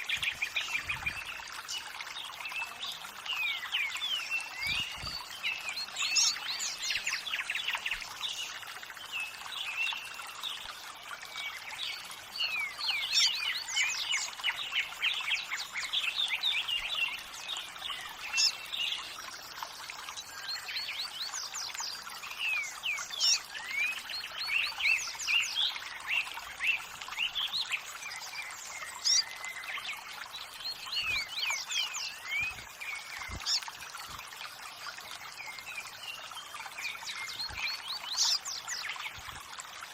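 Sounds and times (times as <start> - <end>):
running water: 0.0 - 39.9
birds chirping and singing: 22.3 - 33.7, 36.8 - 39.2.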